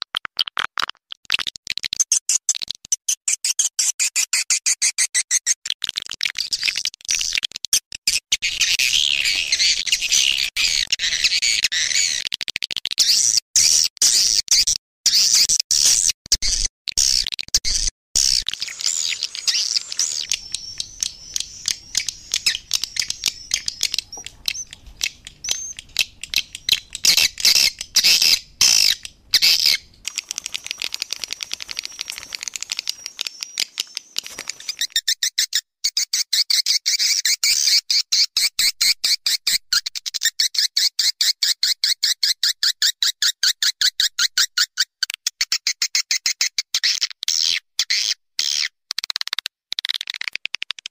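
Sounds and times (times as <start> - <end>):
sharp clicks: 18.2 - 35.0
swiftlets twittering: 18.2 - 35.0.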